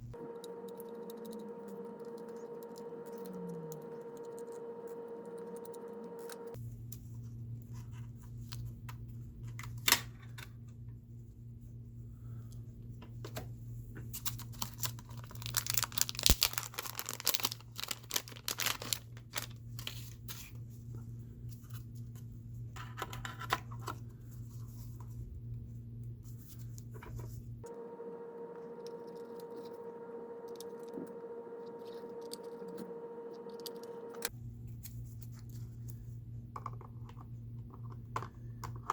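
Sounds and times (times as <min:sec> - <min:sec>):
steady low hum: 0:00.0 - 0:14.5, 0:23.7 - 0:36.6
packaging rustling and tearing: 0:14.2 - 0:20.1.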